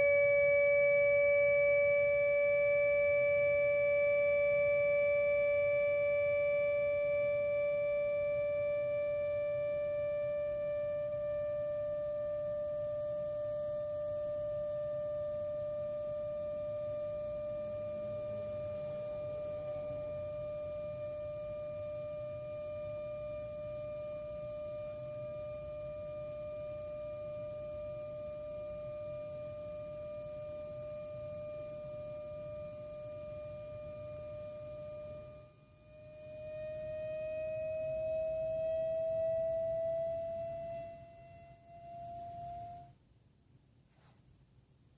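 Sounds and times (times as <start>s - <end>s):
car engine bay whine: 16.6s - 42.9s.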